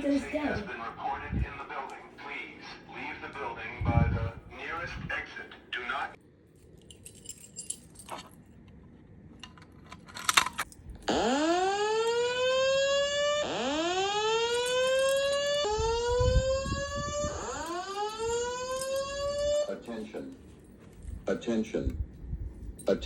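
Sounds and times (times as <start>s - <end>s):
fire alarm whoop tone: 11.1s - 19.8s.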